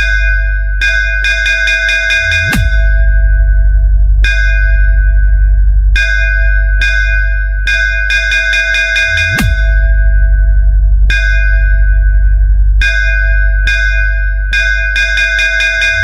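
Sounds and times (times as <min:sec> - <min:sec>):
heavy sub-bass: 0:00.0 - 0:16.0
falling bass sweep: 0:02.5 - 0:06.7, 0:09.4 - 0:13.0.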